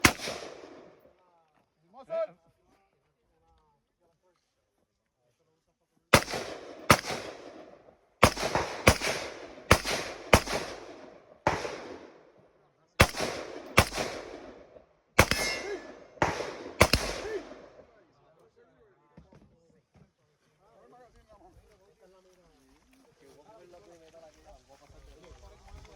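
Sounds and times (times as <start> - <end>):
gunshots with echoing tail: 0.0 - 1.1, 6.1 - 12.3, 13.0 - 17.9
metallic ringing: 15.3 - 15.9.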